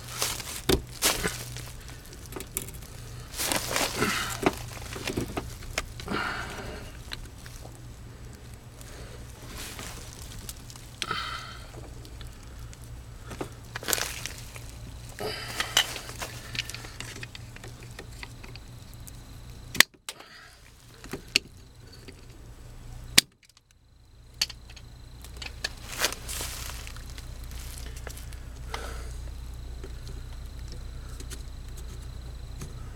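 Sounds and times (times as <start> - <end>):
knocks and scrapes of plumbing work: 0.0 - 7.8, 13.2 - 18.6
steady low hum: 0.0 - 32.9.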